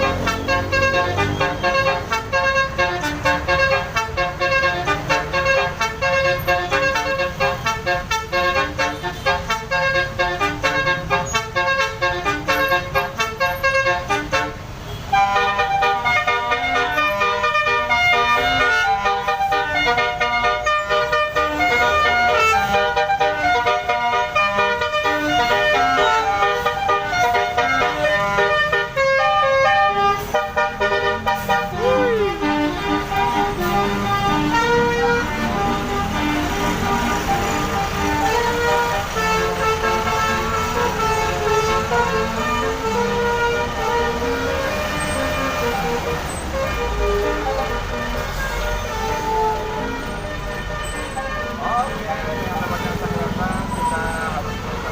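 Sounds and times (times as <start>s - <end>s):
bus horn playing a melody: 0.0s - 54.9s
engine and traffic rumble: 0.0s - 54.9s.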